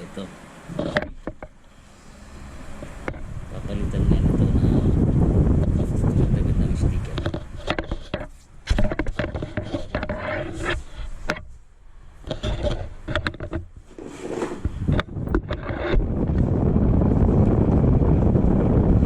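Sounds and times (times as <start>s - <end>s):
hands scraping and rubbing panel: 7.0s - 11.6s, 12.2s - 16.2s.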